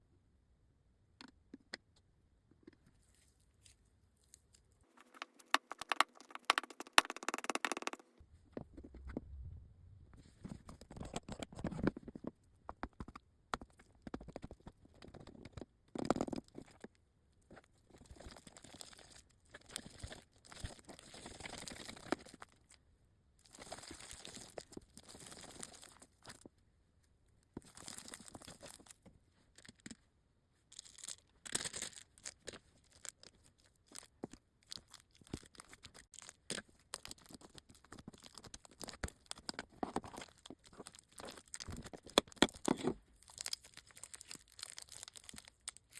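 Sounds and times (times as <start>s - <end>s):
slime squishing and crackling: 30.9s - 45.9s.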